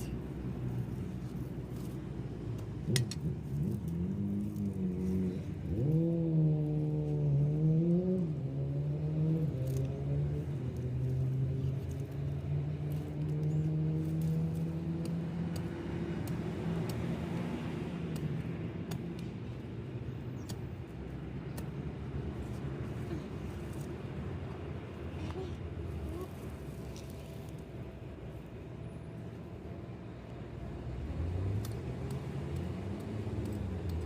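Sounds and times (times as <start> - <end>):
small clicks: 31.3 - 34.0.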